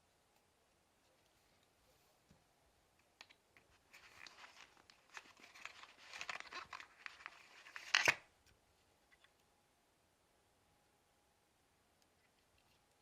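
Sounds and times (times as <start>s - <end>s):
packaging clicks and crinkling: 3.2s - 8.2s
paper or plastic rustling: 3.8s - 8.2s.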